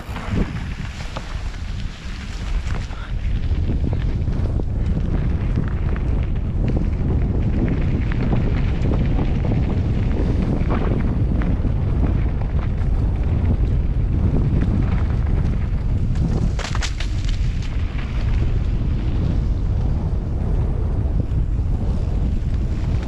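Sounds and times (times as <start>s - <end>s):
bike clicks and rattles: 0.0s - 23.0s
wind buffeting microphone: 0.0s - 23.0s.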